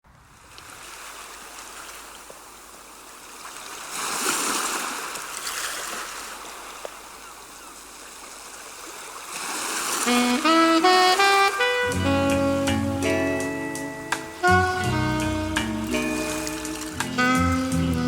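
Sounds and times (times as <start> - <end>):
stream water rushing: 0.4 - 12.0, 13.0 - 18.0.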